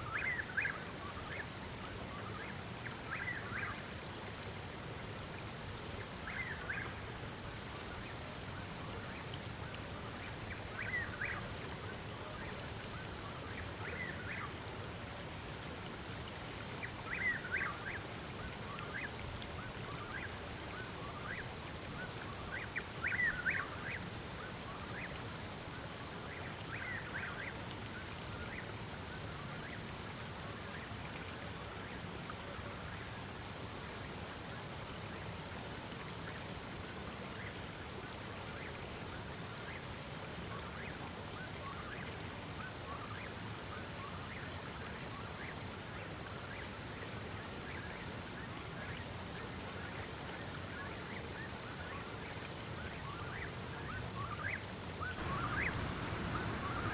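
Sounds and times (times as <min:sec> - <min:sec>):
background hiss: 0:00.0 - 0:56.9.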